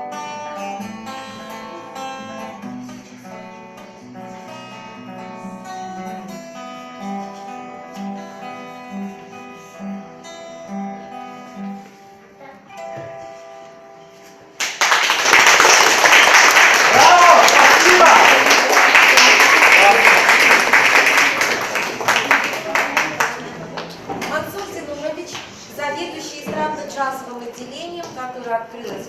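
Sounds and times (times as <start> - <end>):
acoustic guitar playing: 0.0 - 14.8, 15.4 - 27.7
loud applause: 14.6 - 24.3.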